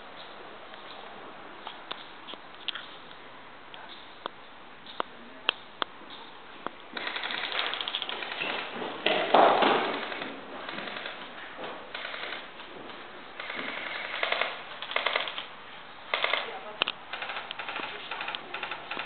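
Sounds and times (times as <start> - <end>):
airsoft guns firing bursts: 7.0 - 11.3, 11.9 - 12.5, 13.4 - 15.5, 16.1 - 19.0.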